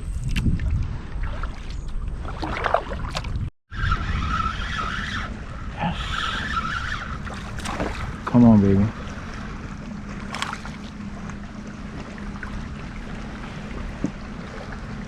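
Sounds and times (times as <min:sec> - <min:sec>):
wind noise: 0:00.0 - 0:08.4
water noise: 0:00.0 - 0:15.0
fishing reel whirring: 0:03.7 - 0:07.6.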